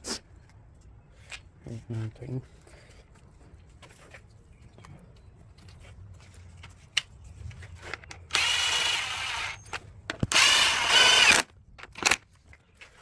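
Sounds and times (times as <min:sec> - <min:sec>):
power drill driving screws: 0:08.3 - 0:12.2.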